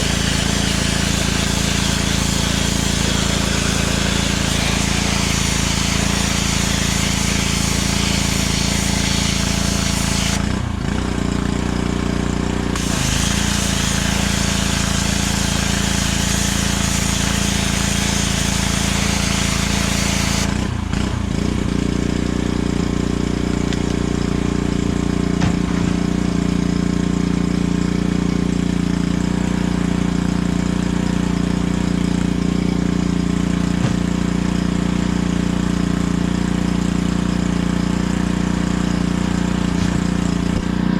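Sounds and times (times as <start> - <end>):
high-pressure spray hissing: 0.0 - 10.5, 12.7 - 20.6
pressure washer engine running: 0.0 - 40.9.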